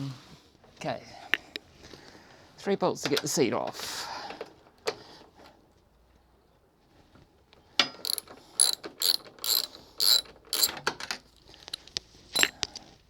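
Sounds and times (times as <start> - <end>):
ratchet wrench clicking: 8.0 - 10.8.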